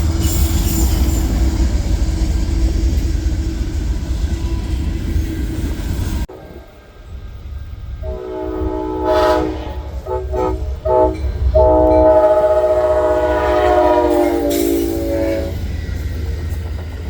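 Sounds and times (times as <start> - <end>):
low rumble of train: 0.0 - 17.0
locomotive air horn chord: 8.0 - 15.6.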